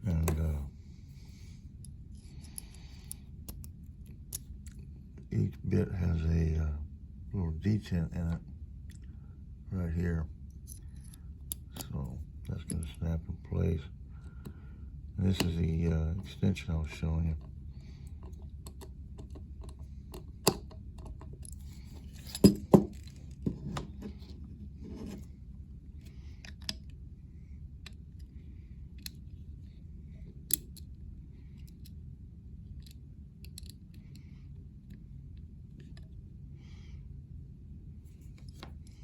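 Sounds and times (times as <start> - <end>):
small metal tool parts clicking: 18.1 - 23.2, 30.4 - 30.9, 32.8 - 34.2.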